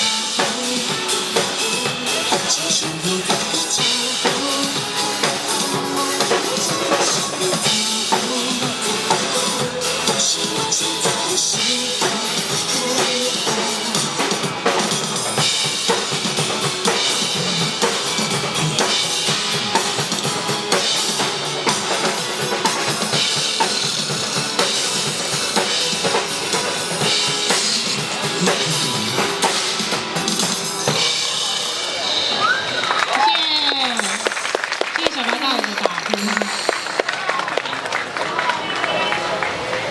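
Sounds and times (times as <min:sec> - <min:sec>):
live pop instrumental music: 0:00.0 - 0:37.8
bass drum beats: 0:01.7 - 0:21.4, 0:25.8 - 0:30.4.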